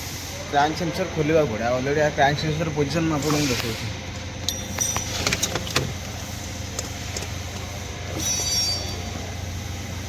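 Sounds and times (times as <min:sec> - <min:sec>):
steady low hum: 0:00.0 - 0:10.0
tools clicking and knocking: 0:04.4 - 0:06.0.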